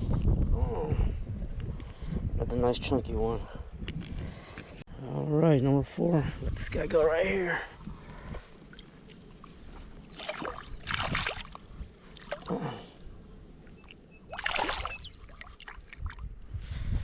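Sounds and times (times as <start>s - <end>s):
water splashing: 8.1s - 16.4s.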